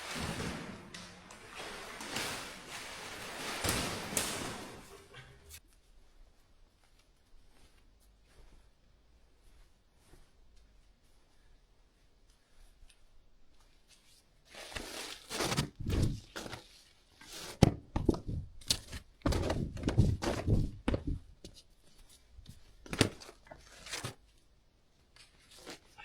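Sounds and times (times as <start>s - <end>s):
rustling: 0.0s - 26.0s
thumps and knocks: 17.6s - 18.6s, 19.2s - 21.5s.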